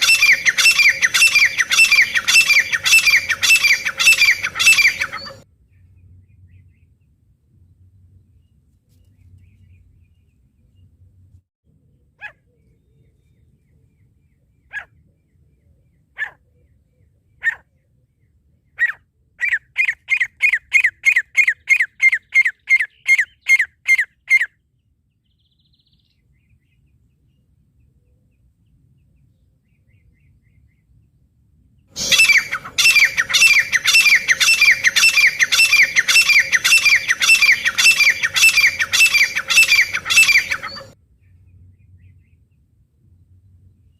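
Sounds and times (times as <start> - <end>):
francolin calling: 0.0 - 5.4, 32.0 - 41.0.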